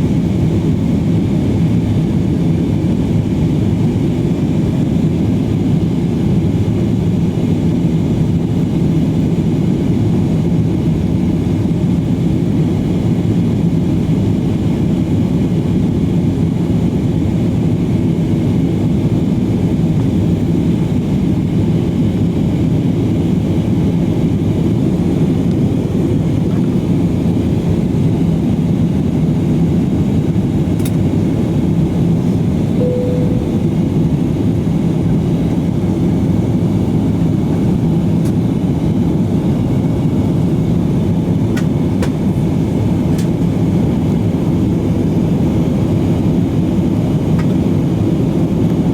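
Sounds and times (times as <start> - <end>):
jet engine rumble in cabin: 0.0 - 48.9
short tone: 32.8 - 34.4.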